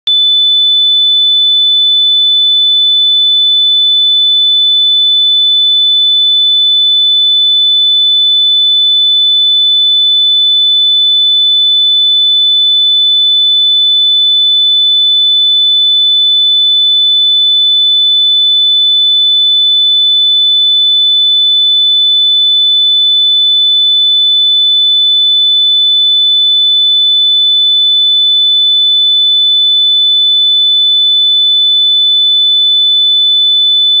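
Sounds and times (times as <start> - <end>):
high-pitched sine tone: 0.1 - 2.2.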